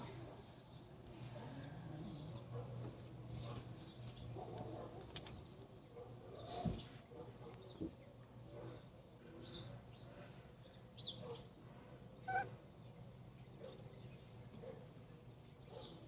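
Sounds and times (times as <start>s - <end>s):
cat chattering: 12.3s - 12.6s.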